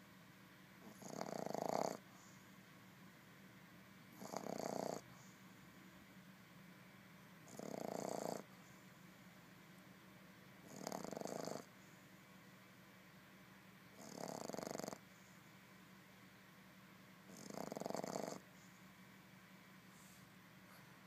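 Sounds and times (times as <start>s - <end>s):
puppy snoring: 0.8s - 2.4s, 4.1s - 5.5s, 7.4s - 8.8s, 10.6s - 12.0s, 13.9s - 15.4s, 17.2s - 18.8s.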